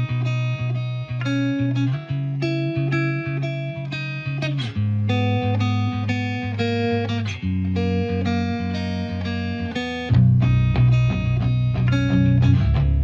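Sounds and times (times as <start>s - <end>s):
plucked guitar melody: 0.0s - 13.0s
bass line with steady beat: 7.5s - 13.0s.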